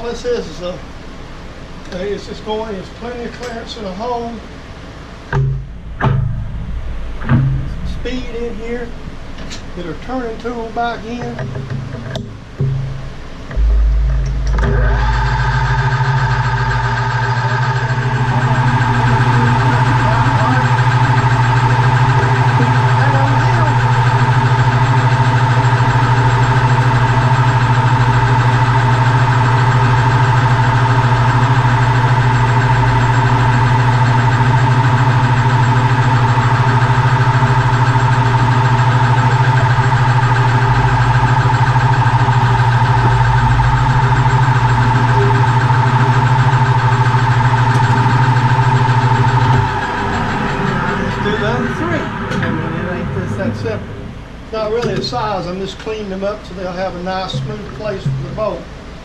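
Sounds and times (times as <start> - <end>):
metal lathe humming: 13.3 - 56.0.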